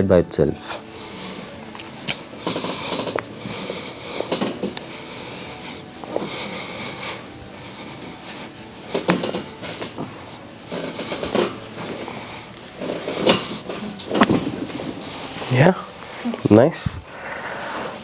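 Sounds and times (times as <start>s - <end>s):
body rustling on a table: 0.8s - 18.0s.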